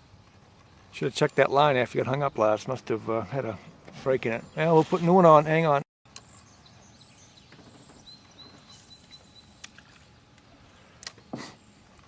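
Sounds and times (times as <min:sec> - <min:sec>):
faint outdoor hiss: 0:00.0 - 0:12.0
thin high chirping: 0:08.1 - 0:09.8.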